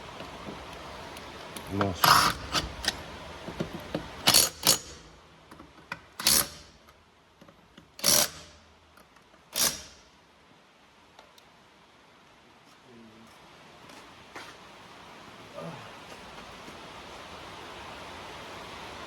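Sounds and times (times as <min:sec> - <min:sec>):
mechanical tool bursts: 0:06.2 - 0:06.7, 0:08.0 - 0:08.6, 0:09.6 - 0:10.0.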